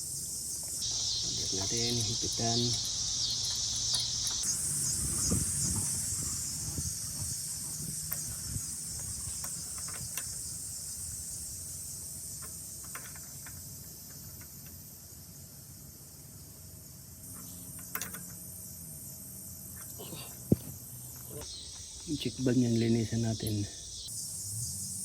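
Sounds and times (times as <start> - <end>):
insects humming: 0.0 - 25.0
clicks of metal tools and parts: 1.9 - 4.5, 17.4 - 18.4.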